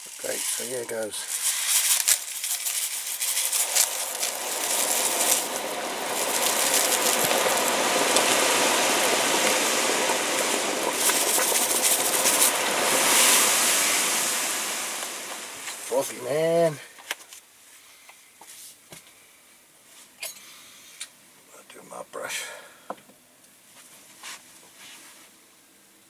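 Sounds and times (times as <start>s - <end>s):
steady hissing: 0.0s - 17.0s.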